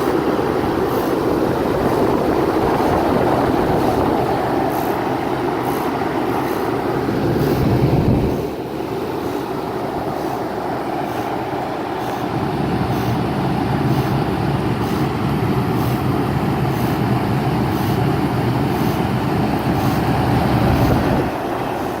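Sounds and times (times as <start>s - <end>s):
compressor hum: 0.0s - 22.0s
fan air rushing: 0.0s - 22.0s.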